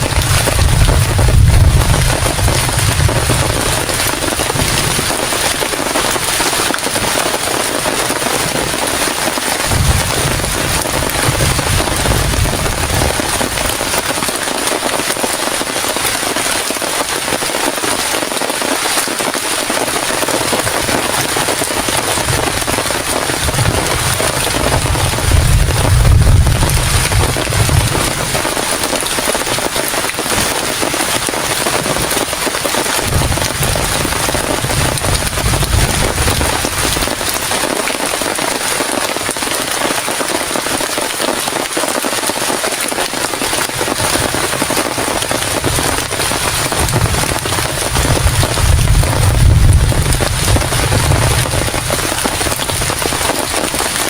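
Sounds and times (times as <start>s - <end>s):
deep thunder rumbles: 0.0s - 14.5s, 20.5s - 38.0s, 43.6s - 54.0s
heavy rain pelting: 0.0s - 54.0s.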